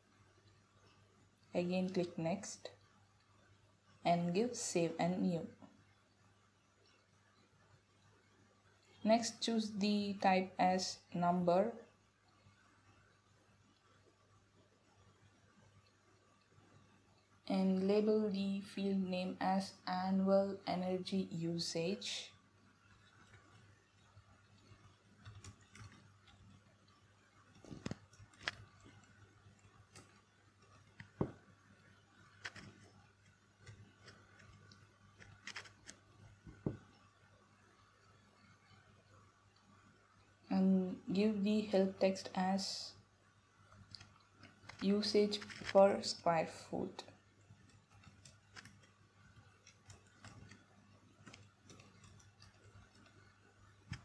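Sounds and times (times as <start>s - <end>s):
low electrical hum: 0.0s - 54.0s
mouse and keyboard clicks: 23.1s - 26.6s, 27.6s - 31.4s, 32.3s - 37.0s, 43.9s - 45.9s, 47.7s - 53.3s
computer keyboard clicks: 47.7s - 50.6s, 51.2s - 53.2s.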